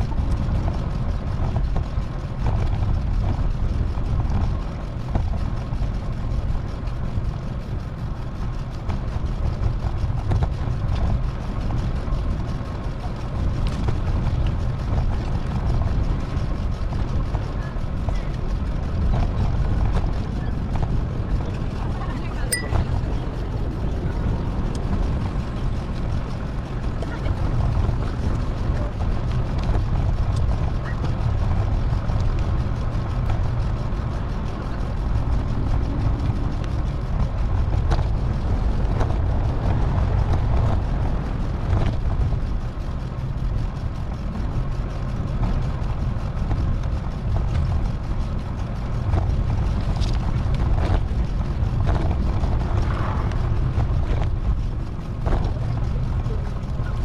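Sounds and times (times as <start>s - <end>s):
wind buffeting microphone: 0.0s - 57.0s
road noise: 17.1s - 57.0s.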